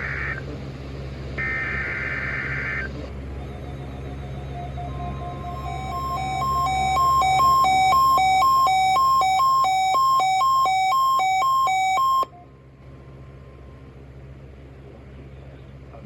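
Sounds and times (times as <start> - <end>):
low steady hum: 0.0 - 16.0
alternating alert beeps: 3.1 - 12.5.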